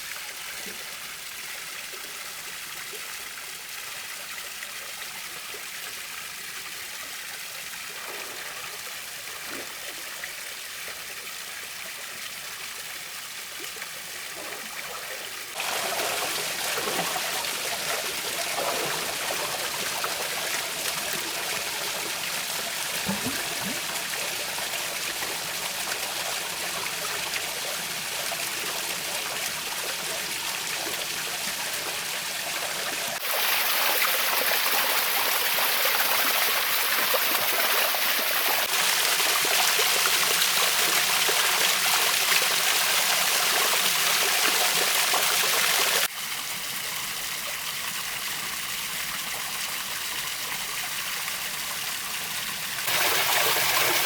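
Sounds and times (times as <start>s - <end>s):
water trickling into a pond: 0.0s - 54.0s.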